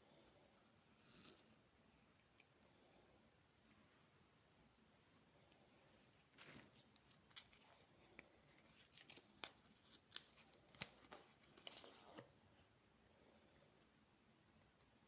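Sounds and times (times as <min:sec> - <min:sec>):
candy packaging crinkling: 0:06.2 - 0:12.2.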